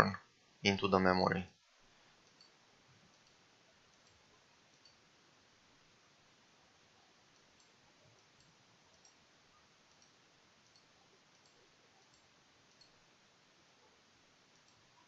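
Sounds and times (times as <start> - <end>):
faint steady hiss: 0.0 - 15.0
small faint clicks: 1.5 - 5.1, 7.3 - 13.1, 14.4 - 15.0.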